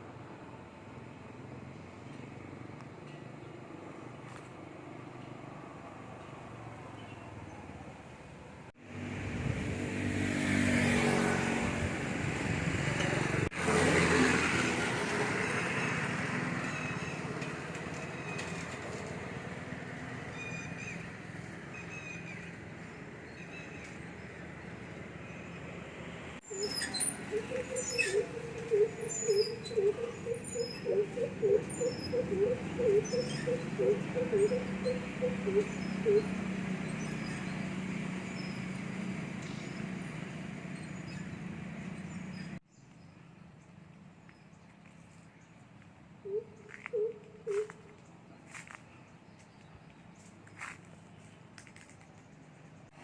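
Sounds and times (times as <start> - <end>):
background traffic: 0.0 - 53.0
vehicle passing: 8.8 - 21.7, 24.4 - 42.6
birds chirping: 26.5 - 40.0
bird repeating low notes: 27.2 - 36.3.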